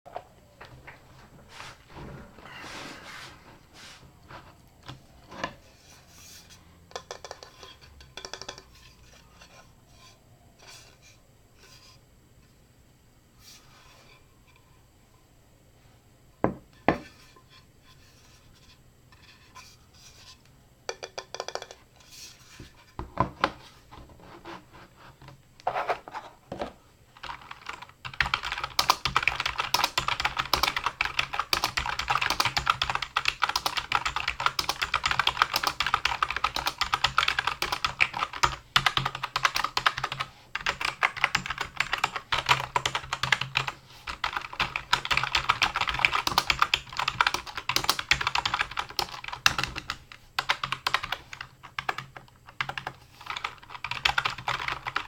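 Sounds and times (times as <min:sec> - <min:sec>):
keyboard typing: 0:27.2 - 0:55.0.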